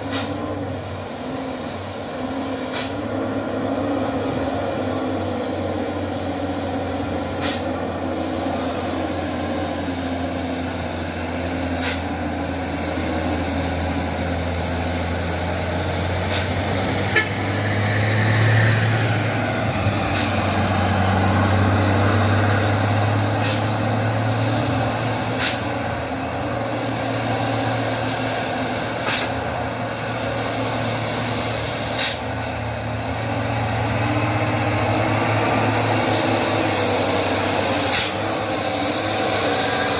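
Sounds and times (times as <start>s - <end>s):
short sharp hisses: 0.0s - 3.1s, 7.2s - 10.0s, 11.6s - 12.9s, 16.2s - 16.6s, 20.1s - 20.4s, 23.2s - 23.8s, 24.4s - 25.8s, 26.7s - 29.4s, 30.0s - 32.4s, 35.8s - 39.9s
diesel truck engine droning: 0.0s - 39.9s.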